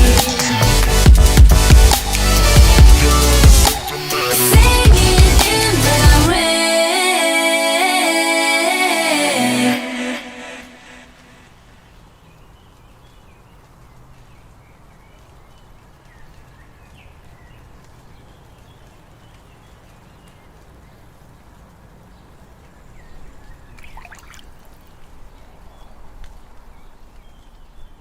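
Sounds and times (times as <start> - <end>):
low background noise: 5.5 - 28.0
small birds chirping: 11.7 - 28.0.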